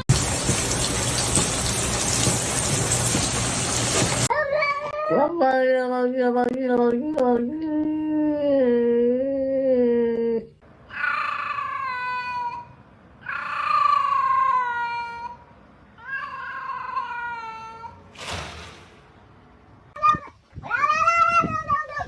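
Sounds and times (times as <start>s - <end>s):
cat meowing: 10.9s - 15.4s, 16.0s - 18.0s.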